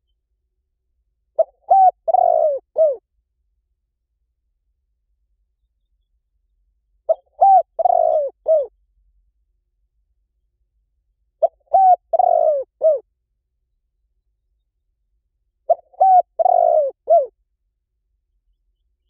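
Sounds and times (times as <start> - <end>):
dove cooing: 1.4 - 3.0, 7.1 - 8.7, 11.4 - 13.0, 15.7 - 17.4.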